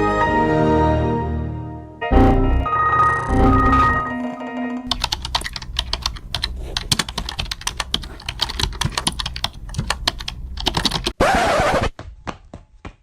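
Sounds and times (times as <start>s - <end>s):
fast typing on keyboard: 3.4s - 11.2s.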